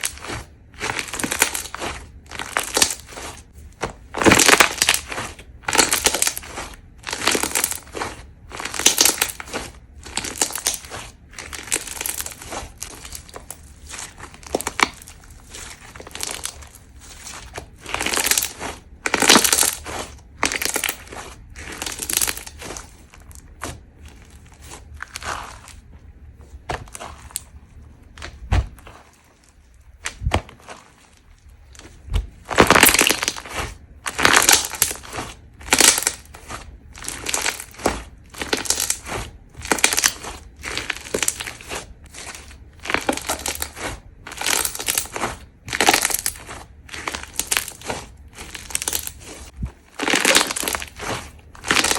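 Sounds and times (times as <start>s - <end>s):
slime crackling and popping: 0.0s - 25.9s, 29.5s - 51.9s
soft low thumps: 25.4s - 29.0s, 31.6s - 32.5s.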